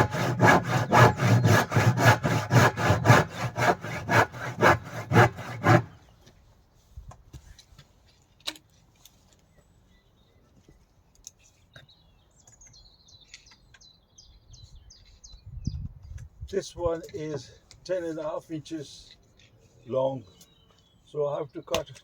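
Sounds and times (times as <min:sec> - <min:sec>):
handsaw cutting timber: 0:00.0 - 0:06.0.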